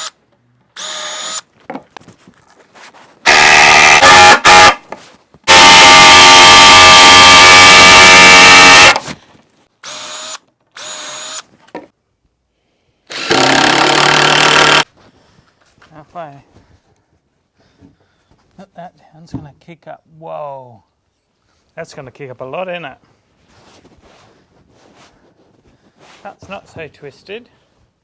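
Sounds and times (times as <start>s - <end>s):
impact driver driving screws: 0.8s - 1.5s, 3.3s - 4.8s, 9.8s - 11.8s, 13.1s - 14.8s.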